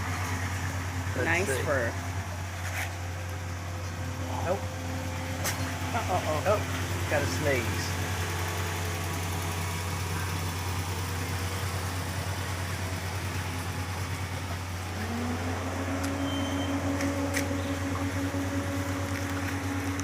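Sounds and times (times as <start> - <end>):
low engine hum: 0.0 - 20.0
higher steady tone: 14.8 - 20.0.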